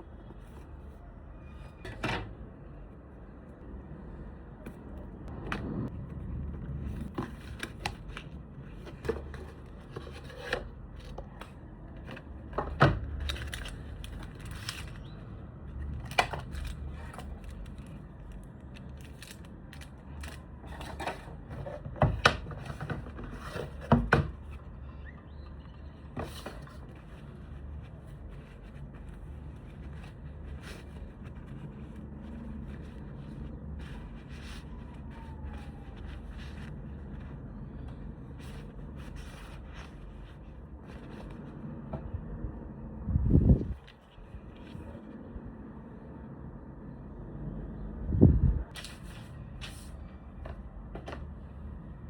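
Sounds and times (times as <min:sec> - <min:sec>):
low steady rumble: 0:00.0 - 0:22.3, 0:22.9 - 0:52.0
box and parts tapping and scraping: 0:06.5 - 0:15.0, 0:18.9 - 0:24.6, 0:26.0 - 0:27.6.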